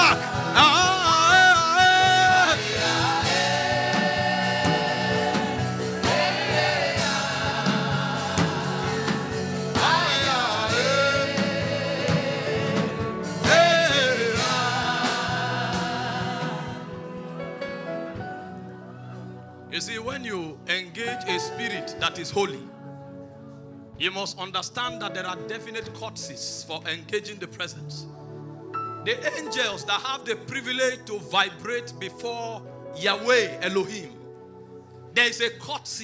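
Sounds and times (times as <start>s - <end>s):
voices singing: 0.0s - 17.3s
instrumental accompaniment: 0.0s - 26.0s, 28.1s - 35.1s.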